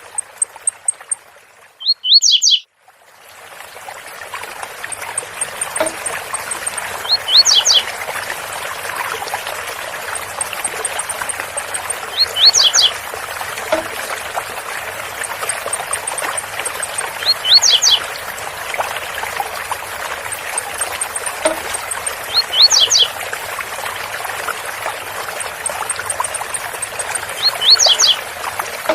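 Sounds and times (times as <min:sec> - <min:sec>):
bird singing short phrase: 0:01.8 - 0:02.7
waterfall running: 0:03.5 - 0:28.9
faint high ticks: 0:04.6 - 0:07.9, 0:10.0 - 0:13.0, 0:15.0 - 0:18.1, 0:20.2 - 0:23.2, 0:24.8 - 0:28.9.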